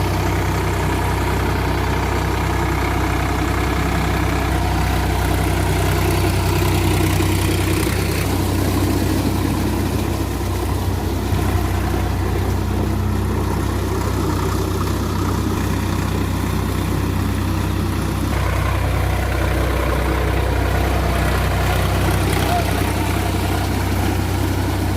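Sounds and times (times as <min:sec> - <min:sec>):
tractor diesel engine running: 0:00.0 - 0:24.9.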